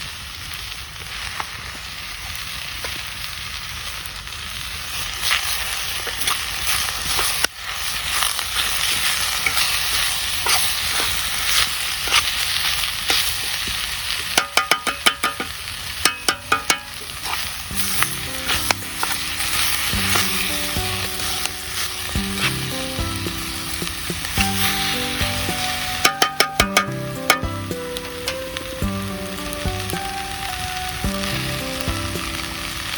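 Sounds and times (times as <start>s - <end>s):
food sizzling in a frying pan: 0.0s - 32.9s
utensil tapping and scraping pan: 9.4s - 12.3s, 14.2s - 28.6s
soft background music: 16.1s - 32.9s.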